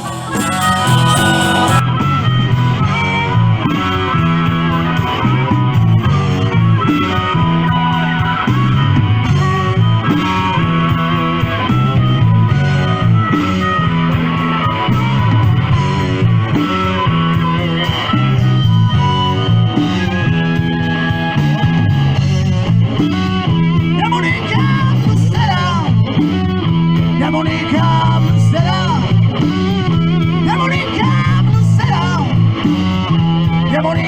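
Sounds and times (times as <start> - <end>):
bass line: 0.0 - 4.2
drums: 0.0 - 34.0
electric guitar: 0.0 - 34.0.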